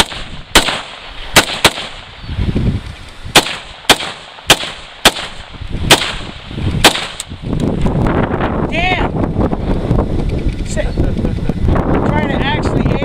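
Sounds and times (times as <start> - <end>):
rifle shots: 0.0 - 2.1, 3.3 - 7.3.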